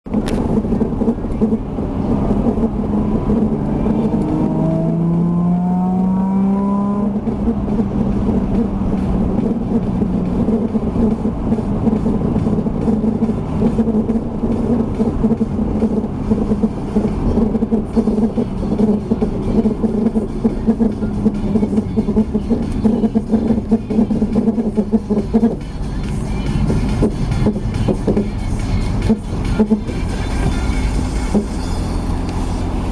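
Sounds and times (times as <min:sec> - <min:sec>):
car engine rumbling: 0:00.0 - 0:32.9
rising whine: 0:00.1 - 0:25.6.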